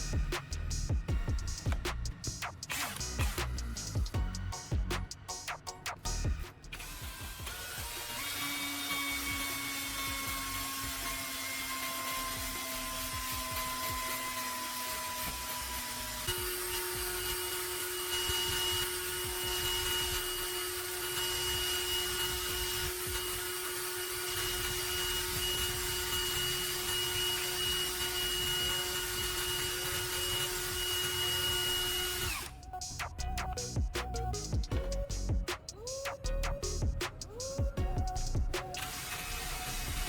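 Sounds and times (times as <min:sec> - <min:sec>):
music: 0:00.0 - 0:23.1, 0:24.4 - 0:40.0
electric power tool whining: 0:06.3 - 0:32.8, 0:38.7 - 0:40.0.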